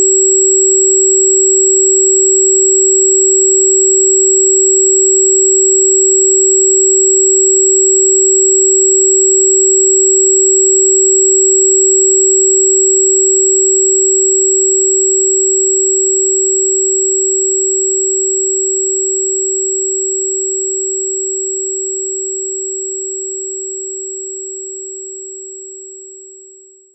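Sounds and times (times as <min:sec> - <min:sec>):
steady electronic sine tone: 0:00.0 - 0:26.9.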